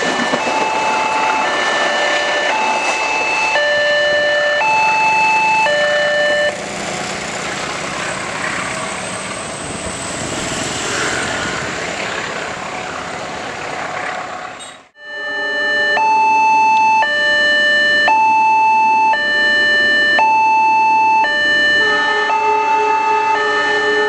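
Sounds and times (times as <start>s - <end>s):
level crossing two-tone alarm: 0.0s - 6.6s, 15.0s - 24.0s
vehicle noise: 0.0s - 24.0s.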